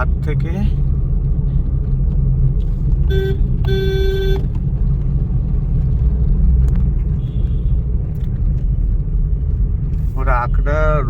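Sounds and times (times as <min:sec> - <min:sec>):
vehicle horn: 0:03.1 - 0:04.5.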